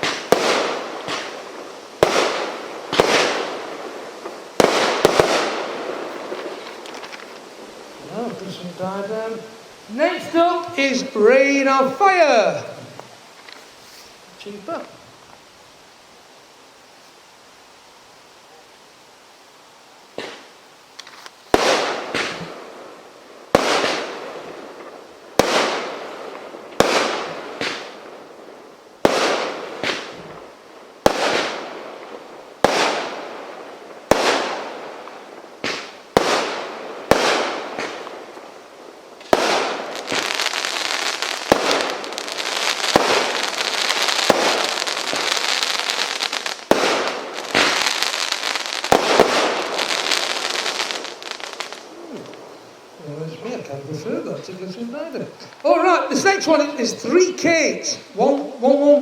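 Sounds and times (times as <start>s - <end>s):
firework crackling: 0.0s - 59.0s
firework cake bangs: 2.0s - 3.6s, 25.4s - 26.0s, 35.6s - 38.1s, 39.2s - 40.6s, 41.2s - 51.8s.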